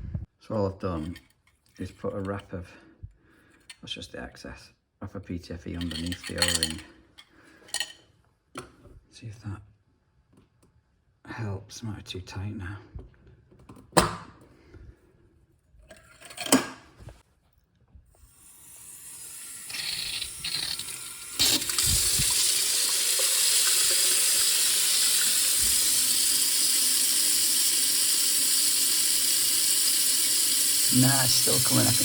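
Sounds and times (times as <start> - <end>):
water running into sink: 18.3 - 32.0.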